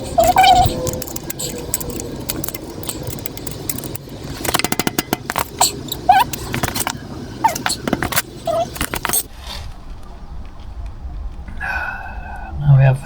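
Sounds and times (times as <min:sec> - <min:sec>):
metallic tool and chain clicks: 0:00.0 - 0:09.3
short rising squeak: 0:00.0 - 0:09.8.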